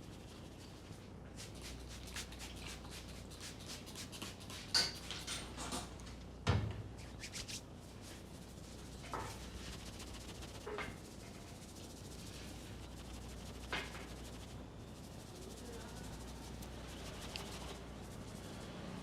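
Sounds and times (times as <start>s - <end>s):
hands rubbing hair and scalp: 0.0s - 5.5s, 6.9s - 19.0s
sharp snaps: 7.0s - 7.6s.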